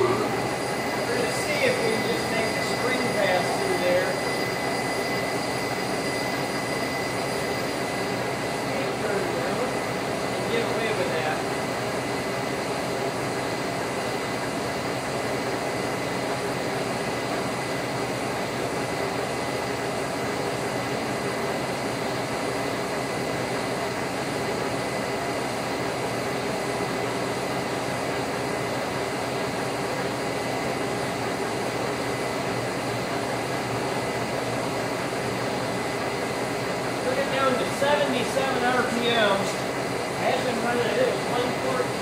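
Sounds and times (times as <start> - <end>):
boring mill humming: 0.0 - 42.0.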